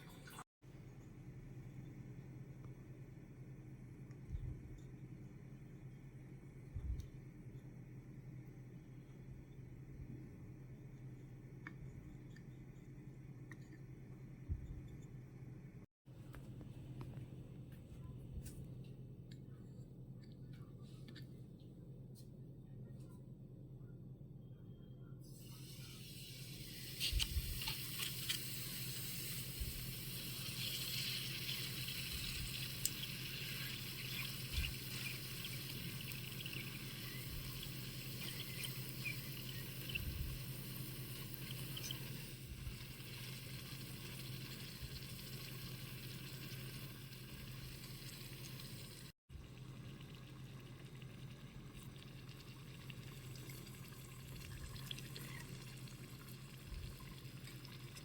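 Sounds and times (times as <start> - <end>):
hot oil sizzling and crackling: 25.4 - 51.0.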